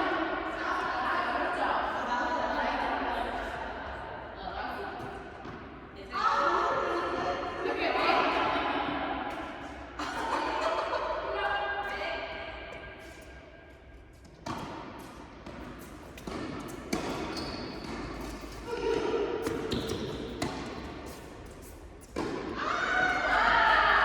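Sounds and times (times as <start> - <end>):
tennis balls bouncing on court: 14.2 - 24.0
tennis balls struck by rackets: 14.4 - 21.2, 22.0 - 23.3.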